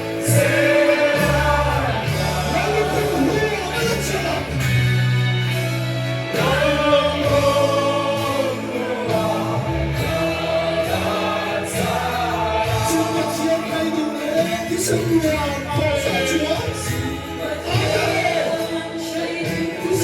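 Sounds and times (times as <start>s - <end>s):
choir singing with instruments: 0.0s - 20.0s
steady bass line: 0.0s - 20.0s.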